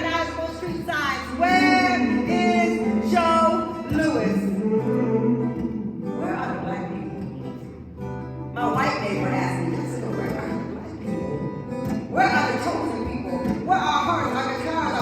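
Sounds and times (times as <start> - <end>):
guitar accompaniment: 0.0 - 15.0
person singing long notes: 1.4 - 6.2.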